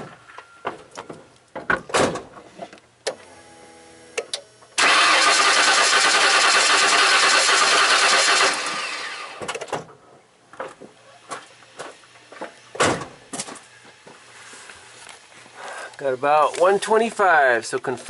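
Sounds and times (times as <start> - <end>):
engine cranking on starter: 4.8 - 9.4.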